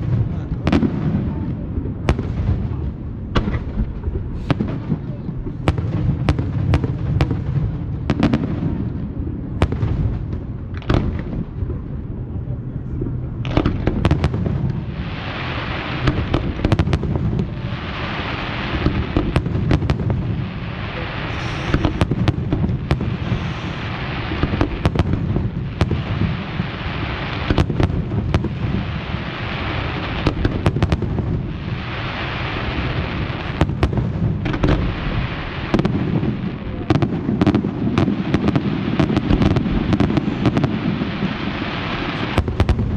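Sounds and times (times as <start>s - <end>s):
low rumble: 0.0s - 6.6s
crackling fireworks hiss: 0.0s - 42.9s
fireworks booms and bangs: 0.0s - 42.9s.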